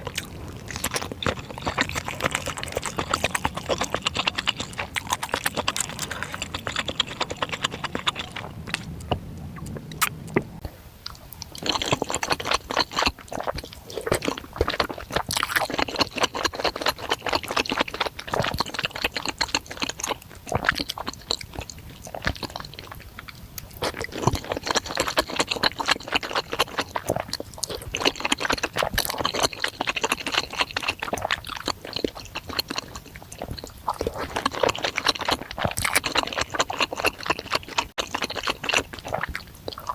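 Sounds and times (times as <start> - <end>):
wet chewing and mouth smacks: 0.0 - 39.9.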